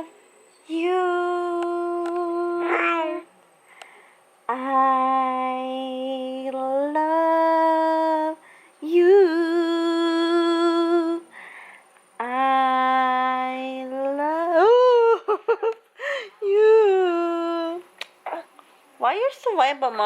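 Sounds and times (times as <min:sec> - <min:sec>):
woman humming: 0:00.7 - 0:03.3, 0:04.5 - 0:11.3, 0:12.2 - 0:15.4, 0:16.4 - 0:17.8
breaths between notes: 0:03.6 - 0:04.3, 0:11.3 - 0:11.9, 0:16.0 - 0:16.4.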